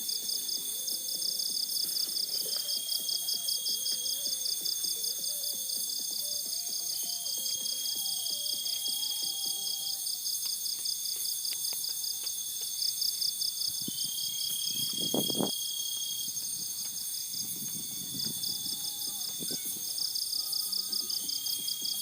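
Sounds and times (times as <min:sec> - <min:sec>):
faint melody: 0:00.0 - 0:10.2, 0:17.3 - 0:22.0
crickets trilling: 0:00.0 - 0:22.0.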